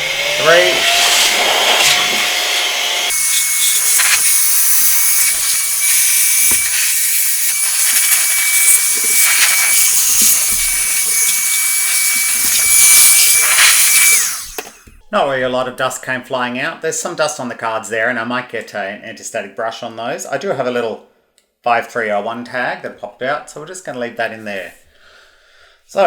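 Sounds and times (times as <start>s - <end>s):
electric air blower whining: 0.0s - 15.1s.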